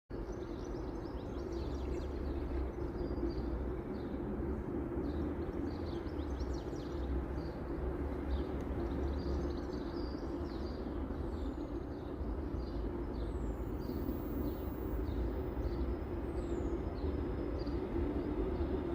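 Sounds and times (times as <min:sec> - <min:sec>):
small birds chirping: 0:00.2 - 0:04.3
freight train rumble and hum: 0:00.2 - 0:18.9.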